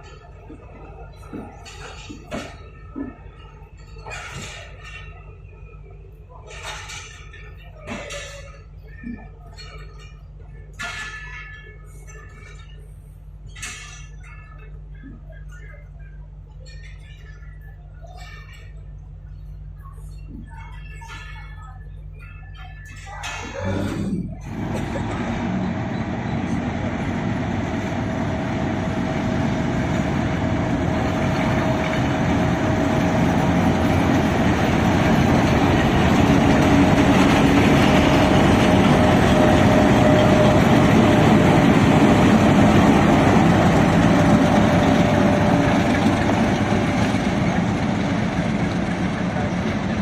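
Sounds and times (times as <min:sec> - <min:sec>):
steady high whine: 0:23.5 - 0:50.0
train rumbling past: 0:23.6 - 0:50.0.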